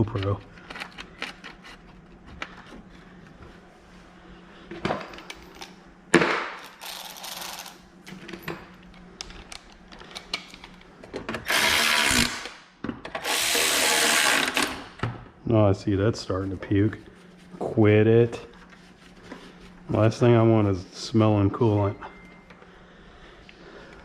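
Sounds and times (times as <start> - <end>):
tools and parts clicking: 6.6 - 11.7.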